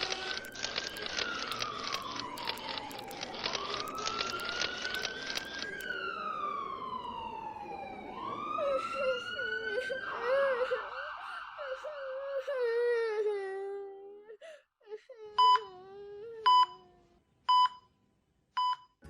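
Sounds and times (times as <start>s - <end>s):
sharp crackling: 0.0s - 5.9s
emergency siren wailing: 0.0s - 13.3s.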